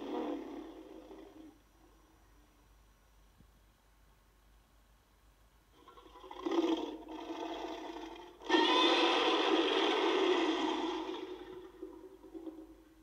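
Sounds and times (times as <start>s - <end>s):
monster roar: 6.4s - 12.6s
rasping cry: 8.4s - 11.9s.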